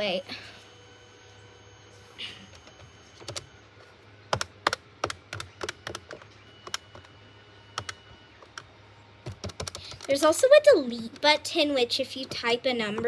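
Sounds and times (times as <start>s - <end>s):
phone keypad clicks: 7.8s - 8.7s.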